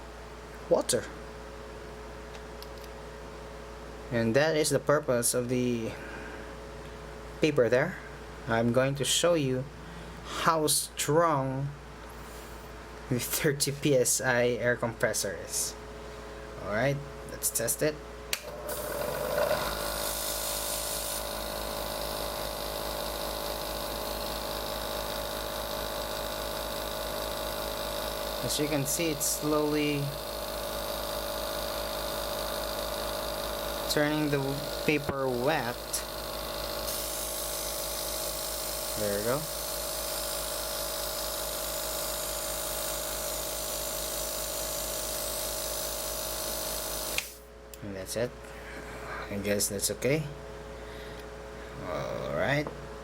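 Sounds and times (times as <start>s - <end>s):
compressor humming and buzzing: 0.0s - 53.0s
airbrush spraying hiss: 18.7s - 47.5s.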